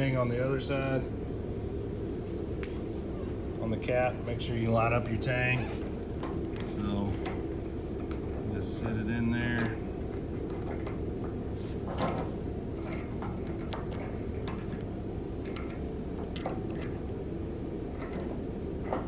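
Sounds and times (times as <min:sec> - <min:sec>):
steady low hum: 0:00.0 - 0:19.0
light metal clicks and taps: 0:09.4 - 0:17.1.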